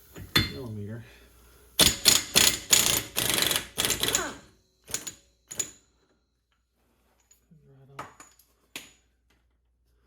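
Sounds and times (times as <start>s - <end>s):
impact wrench hammering: 1.8s - 5.8s.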